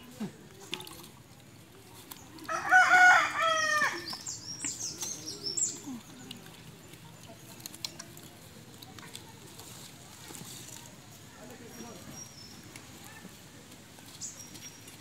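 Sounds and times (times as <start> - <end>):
rooster crowing: 2.5 - 4.1.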